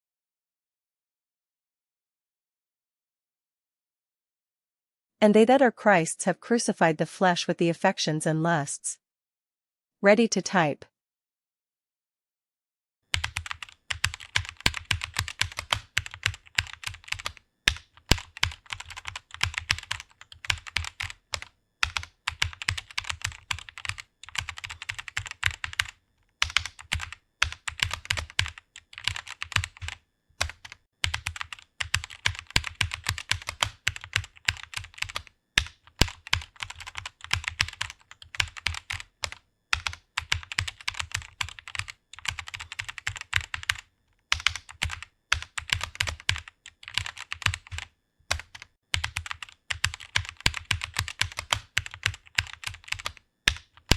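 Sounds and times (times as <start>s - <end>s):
typing on computer keyboard: 13.1s - 53.9s.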